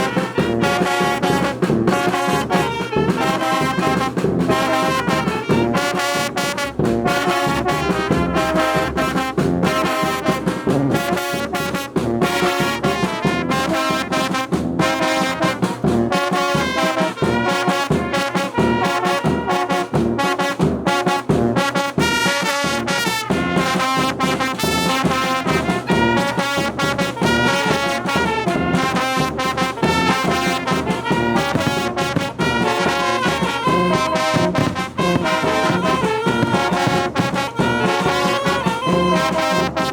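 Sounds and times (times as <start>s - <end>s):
brass band playing: 0.0s - 39.9s
percussion beat: 0.0s - 39.9s.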